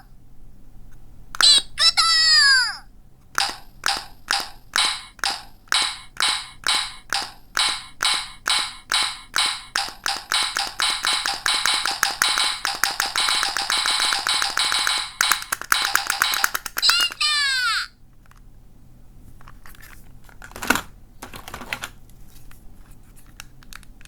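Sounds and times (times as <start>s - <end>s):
electronic clicking pulses speeding up: 3.4s - 17.0s.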